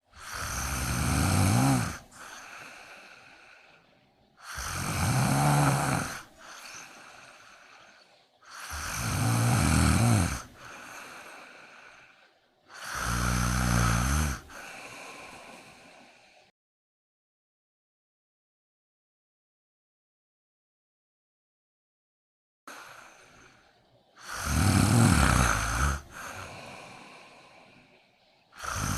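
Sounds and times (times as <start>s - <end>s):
soft breathy breath: 0.0s - 16.5s, 22.7s - 28.9s
kitten snoring: 0.2s - 2.0s, 4.4s - 6.7s, 8.5s - 10.5s, 12.8s - 14.4s, 24.2s - 26.4s, 28.6s - 28.9s.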